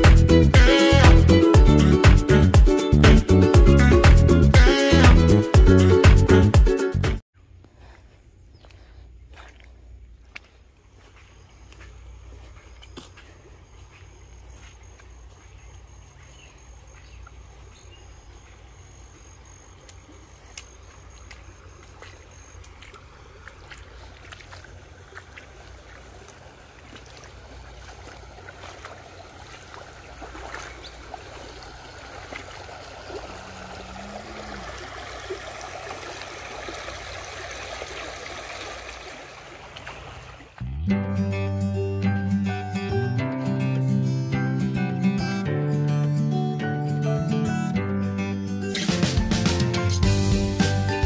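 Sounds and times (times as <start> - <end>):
creek water rushing: 16.9 - 40.6.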